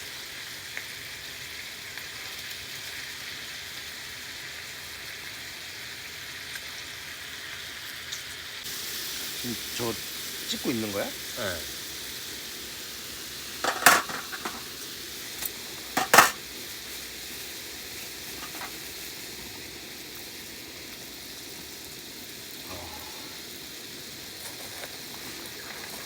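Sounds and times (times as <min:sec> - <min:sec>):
food sizzling in a pan: 0:00.0 - 0:26.0
utensil clattering against pan: 0:13.6 - 0:14.7, 0:16.0 - 0:16.4, 0:18.4 - 0:18.8.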